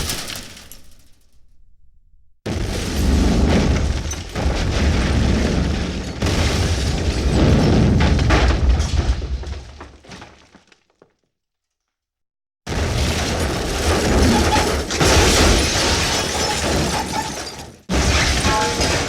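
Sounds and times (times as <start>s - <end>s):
explosion with deep rumble: 2.5s - 10.0s.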